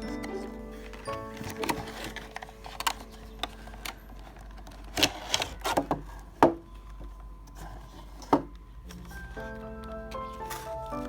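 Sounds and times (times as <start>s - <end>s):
packaging clicks and knocks: 0.0s - 7.6s.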